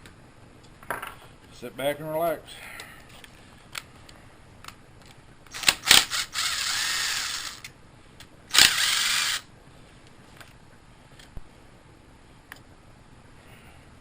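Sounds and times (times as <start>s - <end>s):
power tool running: 5.6s - 7.7s, 8.5s - 9.5s.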